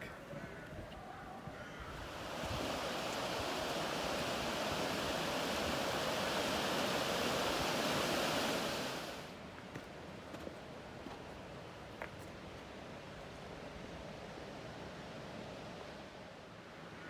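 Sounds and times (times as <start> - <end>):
flowing water: 1.9 - 9.4.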